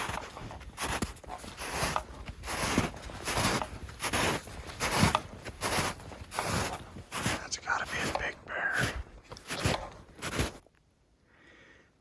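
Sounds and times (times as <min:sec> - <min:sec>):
footsteps on dirt road: 0:00.0 - 0:10.7.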